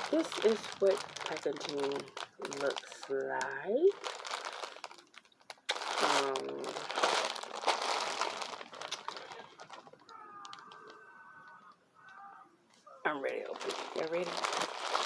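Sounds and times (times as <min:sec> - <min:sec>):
packaging crinkling: 0:00.0 - 0:11.8, 0:13.1 - 0:15.0
crackling clicks: 0:07.0 - 0:12.8.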